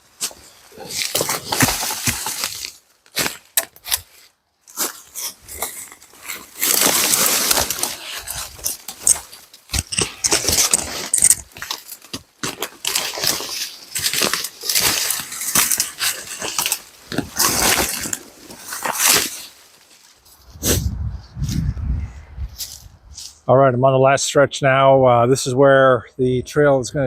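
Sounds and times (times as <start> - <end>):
rustling of brush and dead leaves: 0.0 - 23.5.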